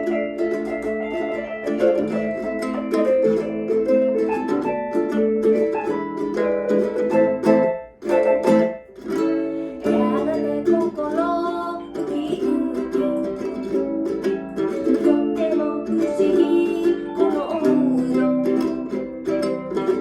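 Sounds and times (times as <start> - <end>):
mini guitar strumming: 0.0 - 20.0
mini keyboard playing: 0.0 - 20.0.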